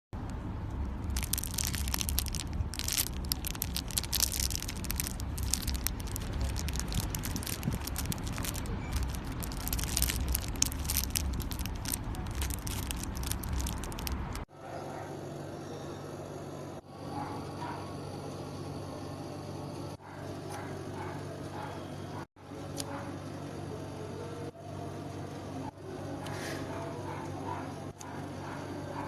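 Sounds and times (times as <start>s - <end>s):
low steady hum: 0.2s - 14.5s
crunchy material crushed by hand: 1.1s - 14.4s.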